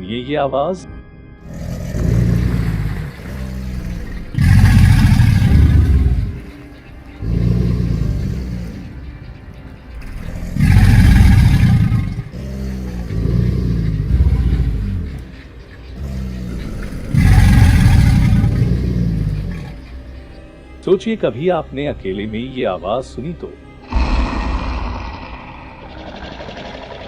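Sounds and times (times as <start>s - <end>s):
alligator bellowing: 1.4s - 20.3s, 23.8s - 27.0s.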